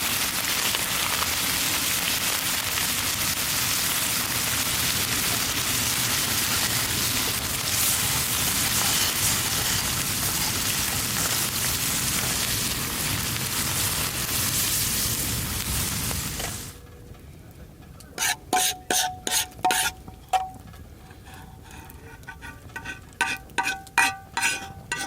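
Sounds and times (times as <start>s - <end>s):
chicken sizzling in a pan: 0.0s - 16.8s.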